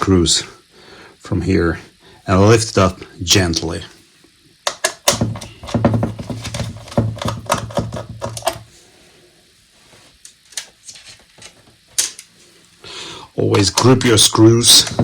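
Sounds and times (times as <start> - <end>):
screwdriver clicks: 4.6 - 5.8.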